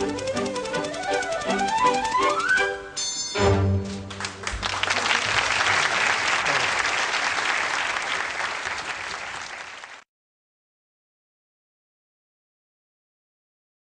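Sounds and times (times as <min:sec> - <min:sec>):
audience applauding: 0:03.8 - 0:10.0.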